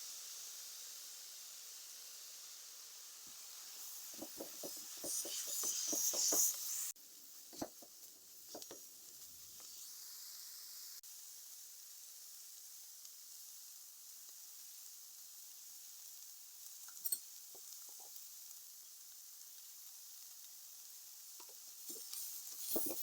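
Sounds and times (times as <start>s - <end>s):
food sizzling in hot oil: 0.0s - 23.0s
utensil knocking against pan: 4.2s - 6.5s.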